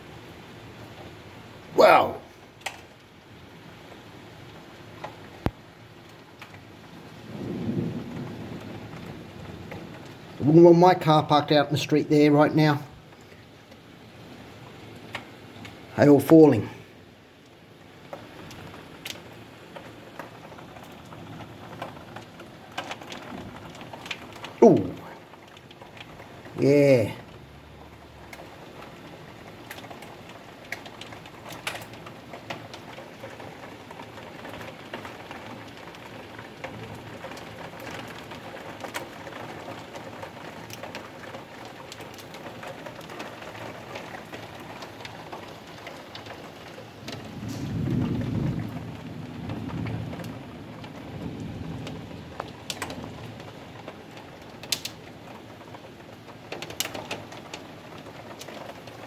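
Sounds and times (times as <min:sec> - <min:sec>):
hail and rain pattering: 0:00.0 - 0:59.0
hailstones ticking: 0:00.0 - 0:59.0
thunder rumble: 0:07.3 - 0:09.8, 0:47.0 - 0:53.4.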